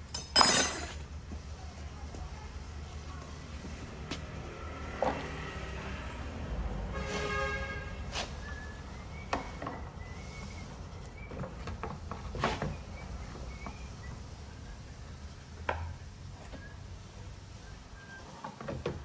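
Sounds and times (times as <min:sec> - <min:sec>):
knocks and clinks: 0:00.0 - 0:01.1.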